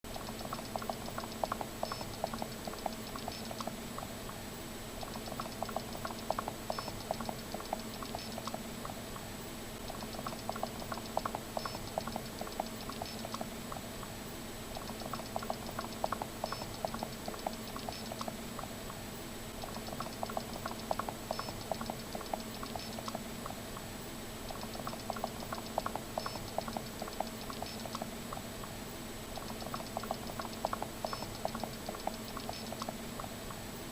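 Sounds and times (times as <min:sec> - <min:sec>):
steady low hum: 0:00.1 - 0:33.9.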